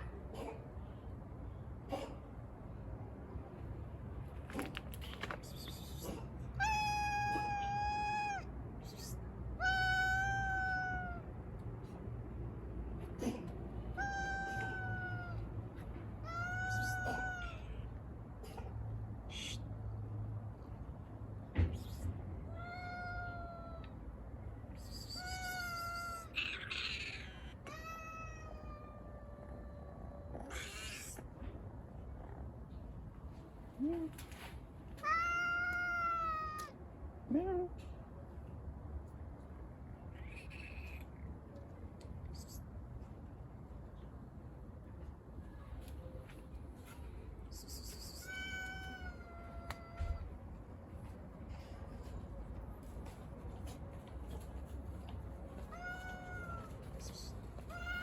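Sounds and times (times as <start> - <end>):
kitten meowing: 6.6 - 8.5, 9.6 - 11.3, 14.0 - 15.4, 16.2 - 17.8, 22.5 - 24.0, 25.0 - 29.3, 30.3 - 31.2, 35.0 - 36.7, 47.9 - 50.3, 55.7 - 56.8, 57.7 - 58.0.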